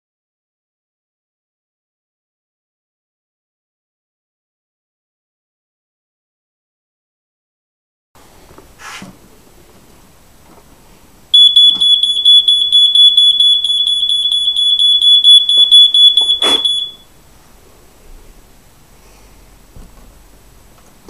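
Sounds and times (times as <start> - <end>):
smoke alarm tone: 11.4 - 17.1.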